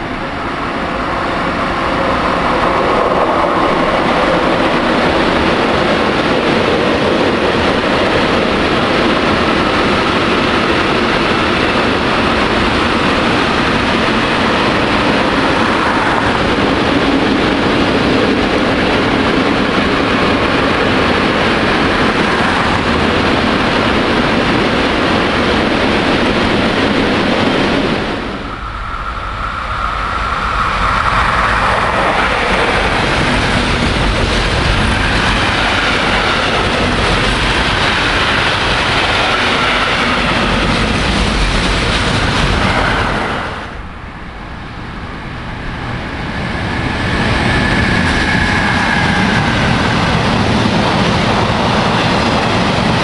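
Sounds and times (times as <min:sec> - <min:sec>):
faint high whine: 0:28.3 - 0:32.3.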